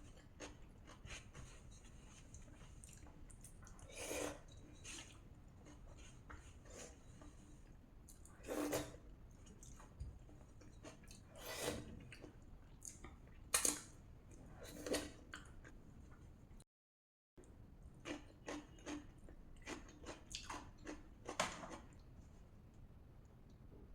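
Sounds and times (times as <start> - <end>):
person chewing: 18.0 - 22.0.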